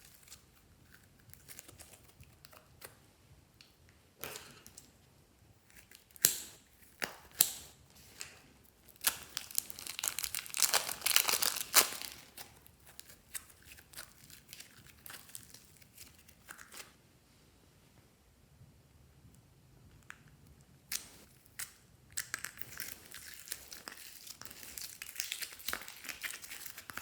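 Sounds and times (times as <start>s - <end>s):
slime crackling and popping: 8.8s - 16.4s, 20.9s - 27.0s.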